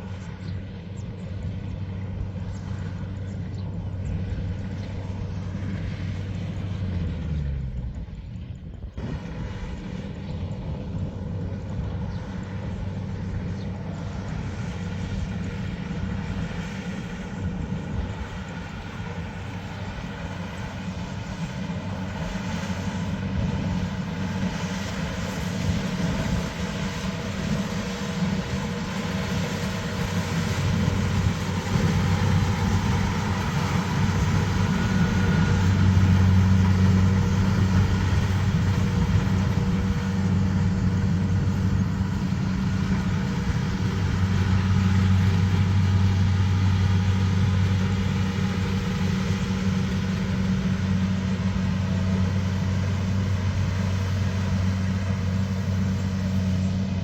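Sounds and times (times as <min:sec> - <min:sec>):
heavy engine humming: 0:00.0 - 0:57.0.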